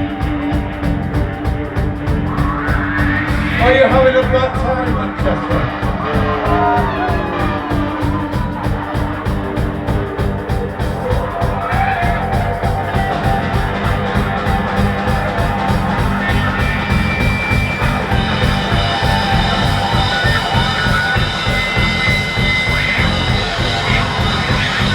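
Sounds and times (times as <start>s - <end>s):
driving drum beat: 0.0s - 24.9s
live rock band: 0.0s - 24.9s.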